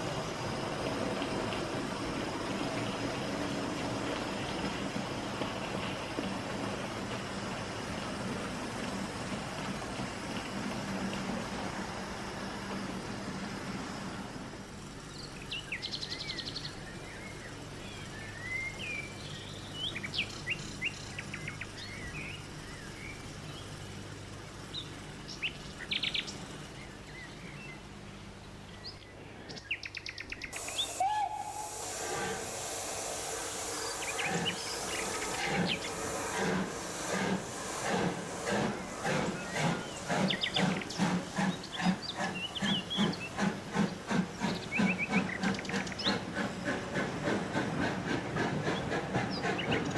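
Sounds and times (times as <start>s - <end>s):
steam locomotive chuffing: 0.0s - 28.0s, 30.4s - 49.9s
birds chirping: 24.7s - 49.9s
steam hiss with whistle: 30.5s - 49.8s.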